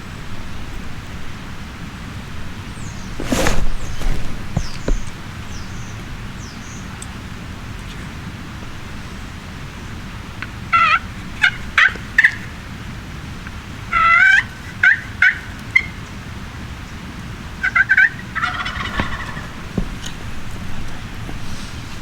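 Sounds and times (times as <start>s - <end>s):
turkey gobbling: 13.9s - 15.9s, 17.6s - 19.8s
turkey call notes: 17.6s - 19.8s.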